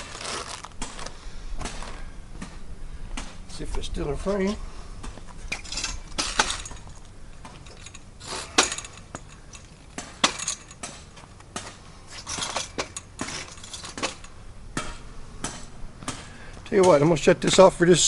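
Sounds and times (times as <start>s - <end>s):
metal frame clinking and rattling: 5.4s - 16.2s.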